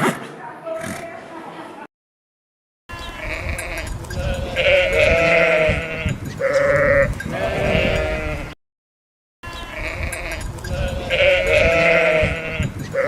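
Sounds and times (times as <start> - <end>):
farm animal bleating: 2.9 - 8.6, 9.4 - 13.0.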